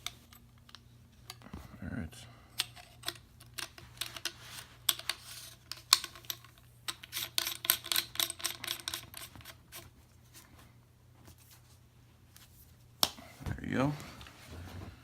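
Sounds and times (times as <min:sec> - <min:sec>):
metal clicks and clinks: 0:05.8 - 0:09.3.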